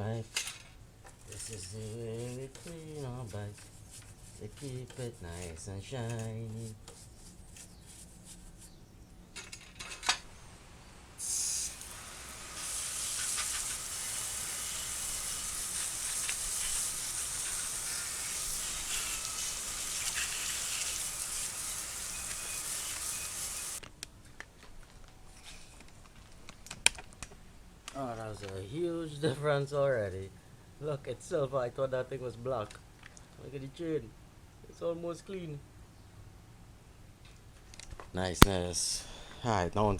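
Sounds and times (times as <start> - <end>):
spray hissing: 10.3 - 23.8.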